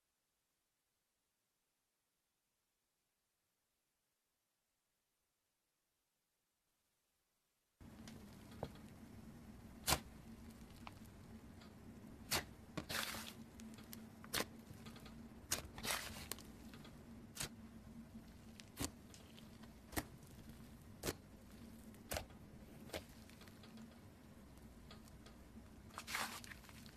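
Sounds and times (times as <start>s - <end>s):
faint steady hum: 7.4s - 26.9s.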